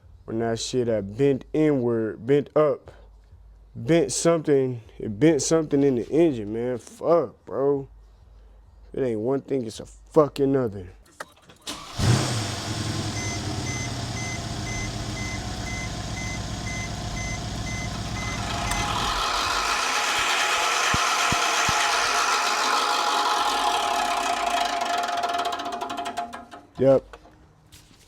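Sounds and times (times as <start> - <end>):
car engine idling: 11.8 - 26.5
fan whirring and scraping: 12.8 - 26.8
warning chime beeping: 13.1 - 19.2.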